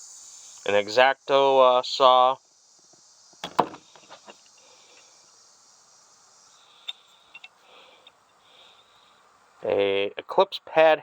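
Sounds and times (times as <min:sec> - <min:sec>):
hand tools clicking and tapping: 0:06.8 - 0:08.2.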